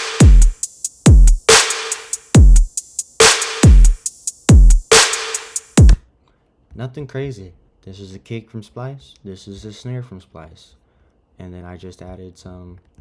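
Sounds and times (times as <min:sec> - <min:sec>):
dubstep drum loop: 0:00.0 - 0:06.0.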